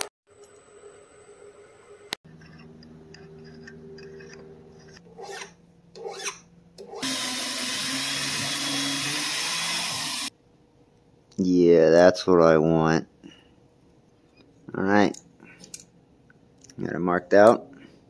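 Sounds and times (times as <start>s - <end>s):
loud rushing power tool: 7.0s - 10.3s.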